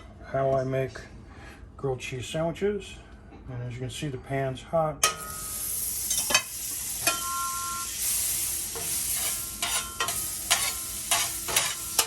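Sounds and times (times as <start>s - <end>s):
metallic ring: 5.0s - 6.4s, 7.0s - 7.8s
butter sizzling in a pan: 5.2s - 12.0s
utensil knocking and scraping pan: 8.8s - 12.0s.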